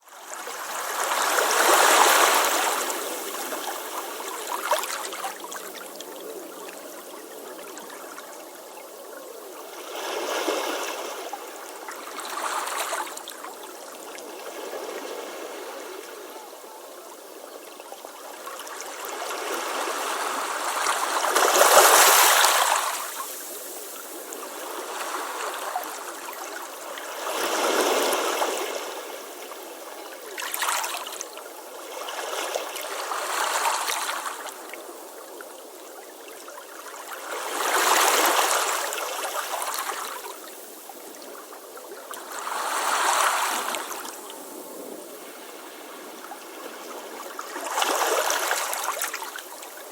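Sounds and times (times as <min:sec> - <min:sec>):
waves breaking on a beach: 0:00.0 - 0:49.9.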